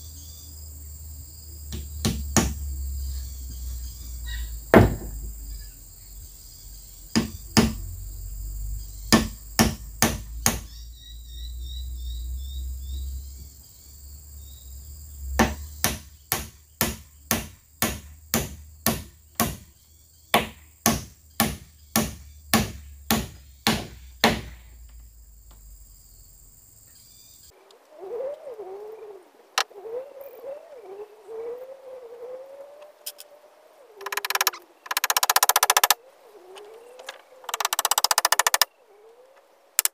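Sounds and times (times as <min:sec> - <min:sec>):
hard striking blows: 0:01.7 - 0:02.6, 0:04.7 - 0:05.4, 0:09.1 - 0:10.7, 0:15.4 - 0:19.7, 0:20.3 - 0:24.7
wavering animal call: 0:03.0 - 0:09.2, 0:27.4 - 0:39.9.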